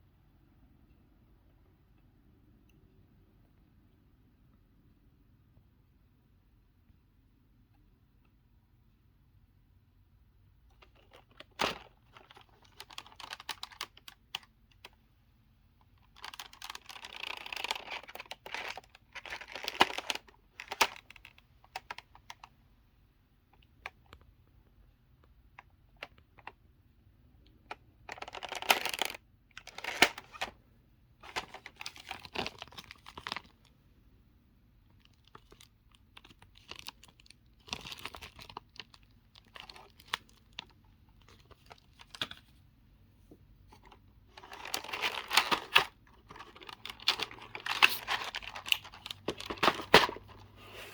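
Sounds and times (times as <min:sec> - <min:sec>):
plastic keycaps clattering: 0:28.1 - 0:30.5, 0:44.4 - 0:50.3.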